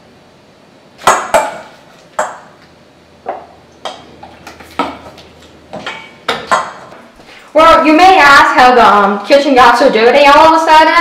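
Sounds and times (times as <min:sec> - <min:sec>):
dishes and utensils clattering: 0:05.8 - 0:06.9.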